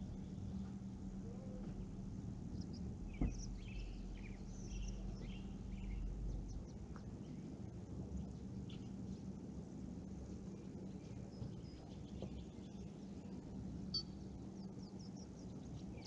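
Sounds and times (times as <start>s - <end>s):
small birds chirping: 0.0s - 7.6s, 10.5s - 16.0s
low steady hum: 0.0s - 16.0s.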